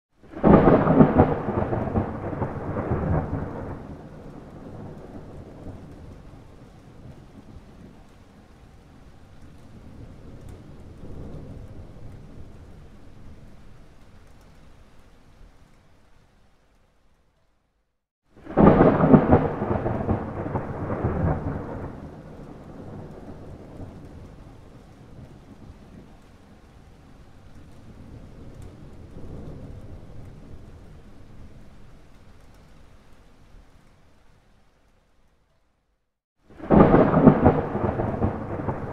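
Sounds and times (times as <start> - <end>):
thunder crack and rumble: 0.3 - 8.1, 9.4 - 13.7, 18.4 - 26.2, 27.6 - 32.0, 36.5 - 38.9.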